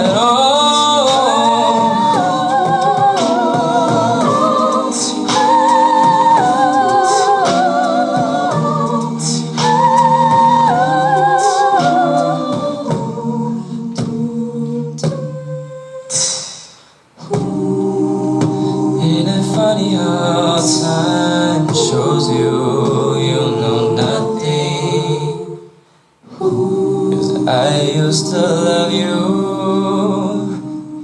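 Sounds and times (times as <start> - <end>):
a cappella group singing: 0.0 - 31.0
vocal percussion hits: 0.0 - 31.0
breathy hiss: 16.0 - 19.9, 24.6 - 26.5.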